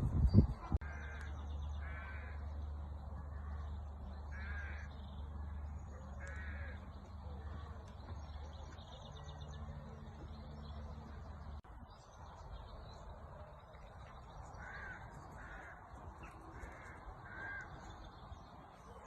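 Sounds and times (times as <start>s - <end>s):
bird cawing: 4.3s - 4.9s, 6.2s - 6.8s, 14.6s - 15.8s, 16.5s - 17.9s.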